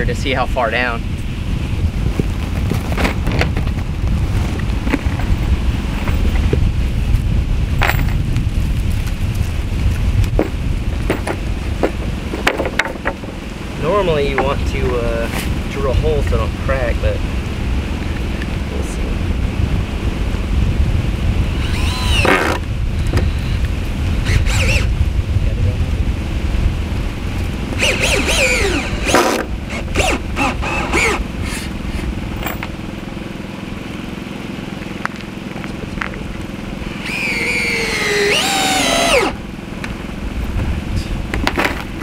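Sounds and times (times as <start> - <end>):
steady low rumble: 0.0 - 42.0
power drill driving screws into wood: 21.5 - 23.6, 24.2 - 24.9, 27.8 - 31.7, 36.9 - 39.4.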